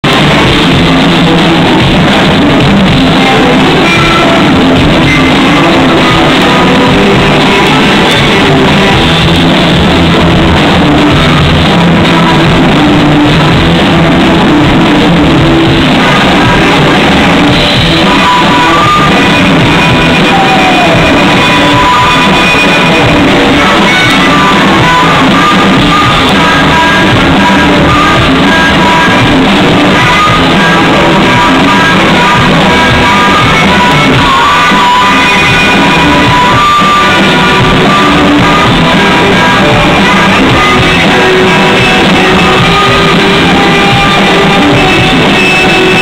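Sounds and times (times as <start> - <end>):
live rock band playing: 0.0 - 46.0
person singing or shouting: 10.7 - 46.0.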